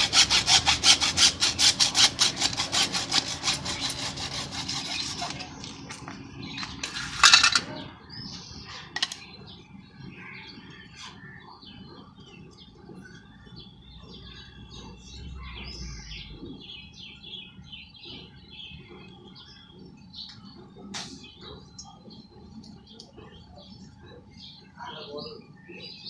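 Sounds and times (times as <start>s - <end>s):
small birds chirping: 3.3s - 26.0s
short loud scrape: 6.6s - 7.8s.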